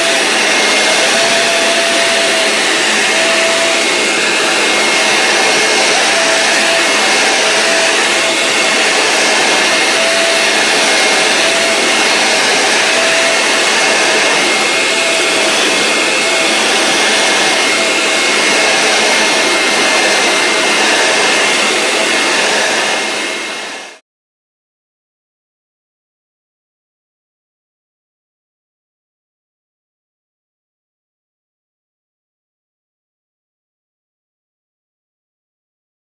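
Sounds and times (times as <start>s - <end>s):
vacuum motor rushing air: 0.0s - 24.0s.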